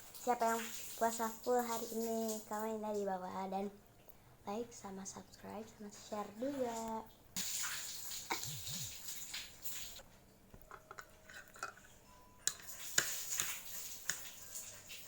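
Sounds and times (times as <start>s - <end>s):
person chewing noodles: 8.3s - 9.0s
soft mouth noises: 8.3s - 9.1s.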